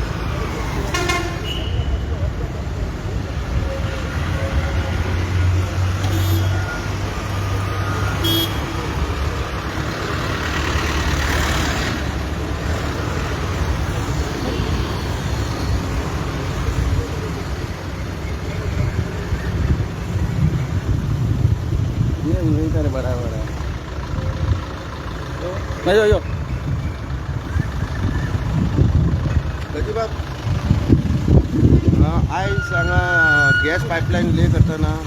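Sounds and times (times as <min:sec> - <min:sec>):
road traffic engines: 0:00.0 - 0:35.0
vehicle passing close: 0:06.7 - 0:18.0.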